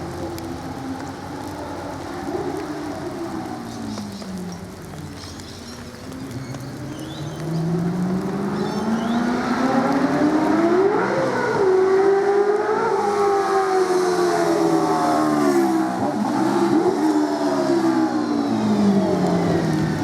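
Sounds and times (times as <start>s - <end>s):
race car engine accelerating: 7.5s - 20.0s.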